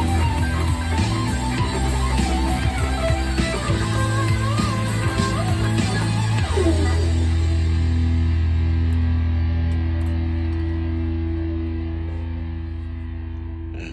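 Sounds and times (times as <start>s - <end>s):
backing track: 0.0s - 13.9s
electric guitar: 0.0s - 13.9s.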